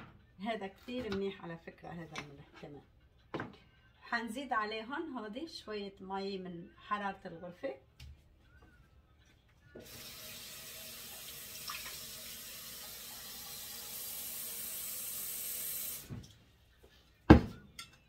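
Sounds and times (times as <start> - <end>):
tap water running into a cup: 9.8 - 16.1.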